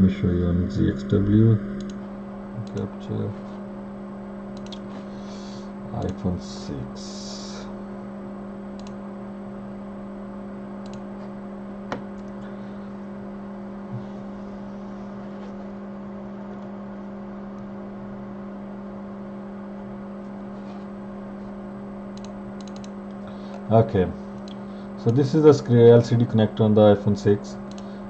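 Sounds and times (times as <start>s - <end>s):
electrical equipment humming: 0.0s - 28.0s
faint clicks: 4.6s - 4.8s, 8.8s - 9.0s, 22.2s - 23.6s, 27.7s - 27.9s.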